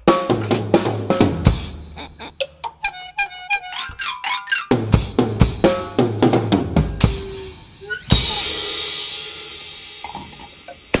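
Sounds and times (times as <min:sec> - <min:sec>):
drum hits: 0:04.8 - 0:07.5.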